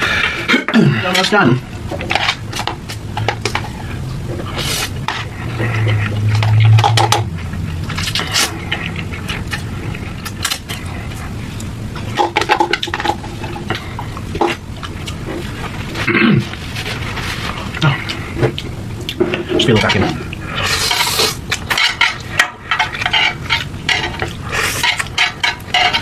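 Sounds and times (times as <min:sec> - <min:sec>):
chewing and slurping noodles: 0:20.2 - 0:26.0.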